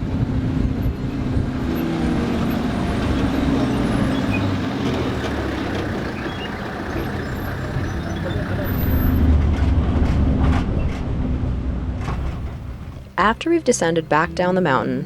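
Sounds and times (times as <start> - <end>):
vehicle engine running: 0.0 - 9.9
road and wind noise: 0.0 - 14.9.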